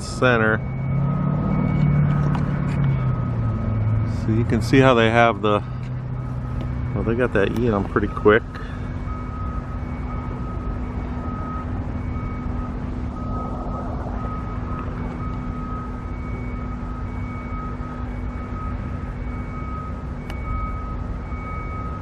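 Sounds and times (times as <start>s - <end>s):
construction machine engine running: 0.0s - 22.0s
warning alarm beeping: 0.0s - 22.0s.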